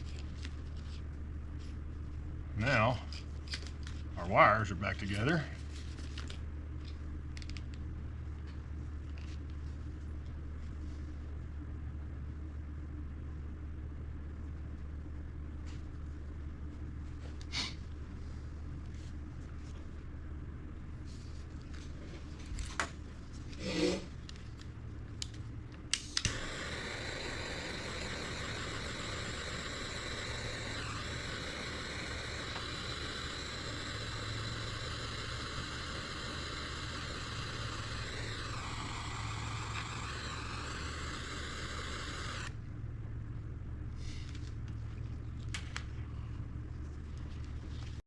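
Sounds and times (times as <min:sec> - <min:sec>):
heat gun blowing: 0:26.0 - 0:42.6.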